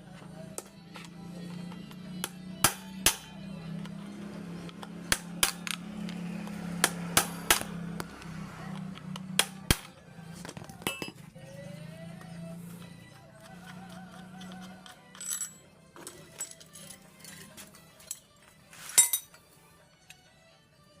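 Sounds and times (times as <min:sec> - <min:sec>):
metal tools clinking: 0:10.9 - 0:11.2, 0:14.6 - 0:19.4.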